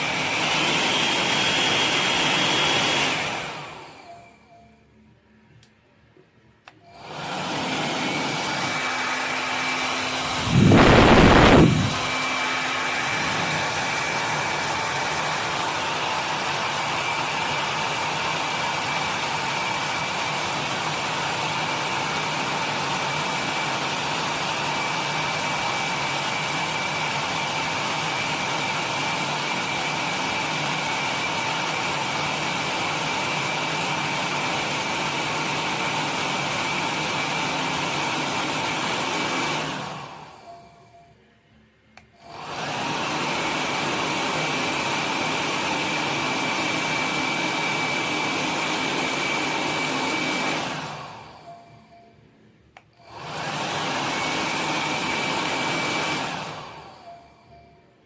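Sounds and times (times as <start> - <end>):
hair dryer running: 0.0 - 4.2, 6.7 - 40.6, 42.2 - 51.9, 53.0 - 57.5
loud rush of air: 8.4 - 14.0.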